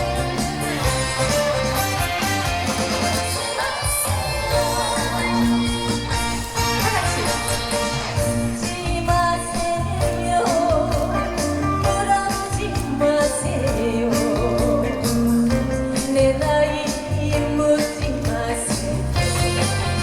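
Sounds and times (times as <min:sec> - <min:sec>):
backing music with steady beat: 0:00.0 - 0:20.0
woman singing with vibrato: 0:03.0 - 0:06.7, 0:08.4 - 0:20.0.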